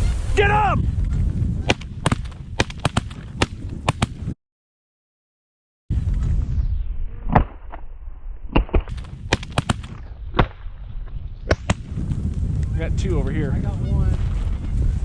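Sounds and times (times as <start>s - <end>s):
wind buffeting microphone: 0.0s - 4.4s, 8.9s - 15.0s
shotgun blasts: 1.6s - 4.3s, 8.5s - 10.7s, 11.5s - 11.9s.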